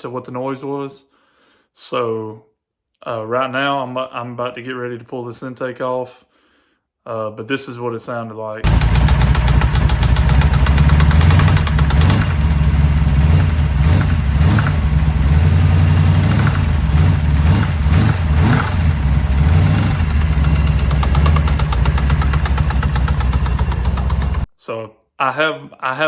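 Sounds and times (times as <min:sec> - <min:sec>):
engine running with metal knock: 0:08.6 - 0:24.5.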